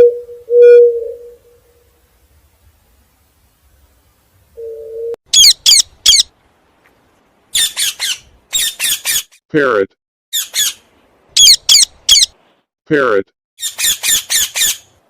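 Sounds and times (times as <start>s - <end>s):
parrot squawking: 5.3s - 6.3s, 7.5s - 9.4s, 10.3s - 10.8s, 11.4s - 12.4s, 13.6s - 14.9s.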